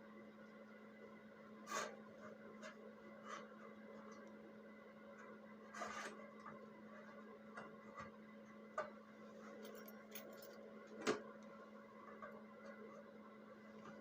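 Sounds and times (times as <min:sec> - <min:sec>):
scrape: 0:01.6 - 0:03.7, 0:05.6 - 0:07.2.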